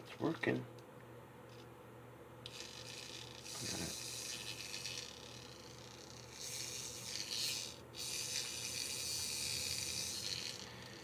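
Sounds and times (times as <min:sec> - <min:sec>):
low electrical hum: 0:00.0 - 0:11.0
toy train motor whirring: 0:02.4 - 0:11.0.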